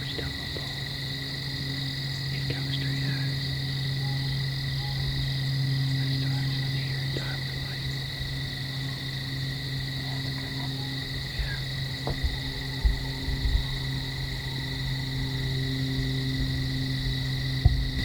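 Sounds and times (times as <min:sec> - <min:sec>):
insects trilling: 0:00.0 - 0:18.0
steady low hum: 0:00.0 - 0:18.0.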